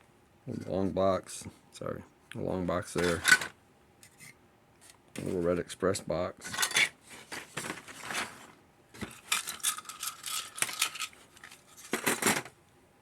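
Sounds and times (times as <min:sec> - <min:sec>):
plastic parts clicking and rattling: 0:03.0 - 0:03.5, 0:06.4 - 0:12.6.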